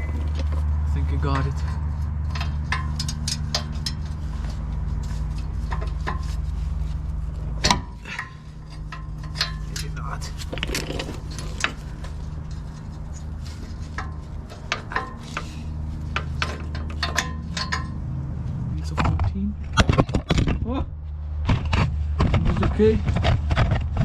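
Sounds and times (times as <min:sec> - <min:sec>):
metal tools clinking: 0:08.7 - 0:12.2.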